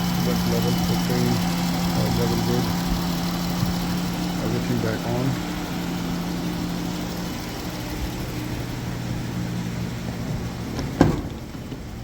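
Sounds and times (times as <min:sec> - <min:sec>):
van engine idling: 0:00.0 - 0:12.0
sharp thump: 0:10.8 - 0:11.4.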